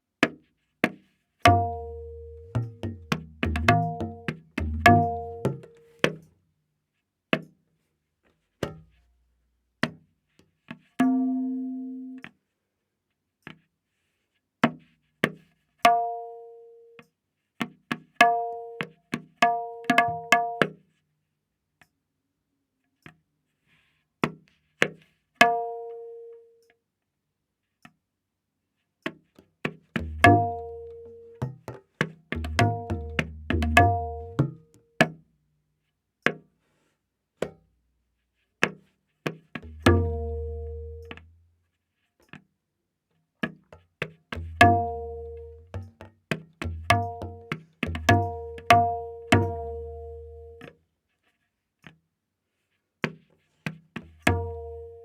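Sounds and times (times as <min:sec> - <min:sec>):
deep tabla bass strokes: 0:01.4 - 0:05.8, 0:30.0 - 0:31.6, 0:32.3 - 0:34.7, 0:39.6 - 0:41.4, 0:44.3 - 0:50.6, 0:54.2 - 0:55.0
tabla ringing strokes: 0:01.4 - 0:06.3, 0:11.0 - 0:12.3, 0:30.0 - 0:35.2, 0:39.6 - 0:41.4, 0:43.7 - 0:50.7, 0:54.2 - 0:55.0.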